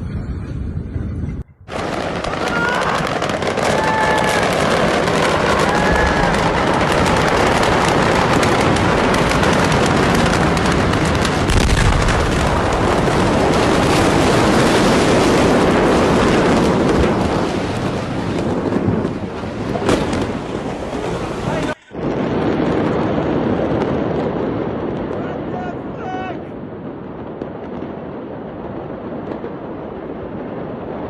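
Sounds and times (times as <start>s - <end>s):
explosion rushing roar: 1.6s - 31.0s
deep boom: 1.7s - 25.2s.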